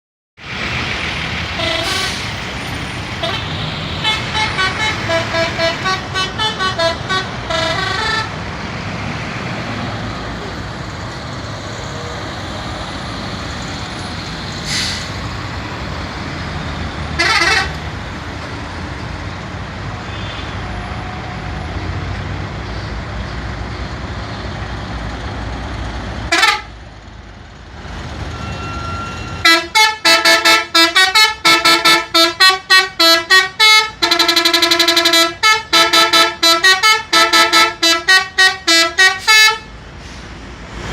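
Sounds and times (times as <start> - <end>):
traffic noise: 0.4 - 40.9
multi-tone bus horn tune: 1.5 - 2.4, 3.1 - 8.4, 17.1 - 17.8, 20.0 - 20.9, 26.3 - 26.8, 28.3 - 39.7
single horn blasts: 3.2 - 8.3, 17.2 - 17.8, 26.3 - 26.7, 28.4 - 39.7.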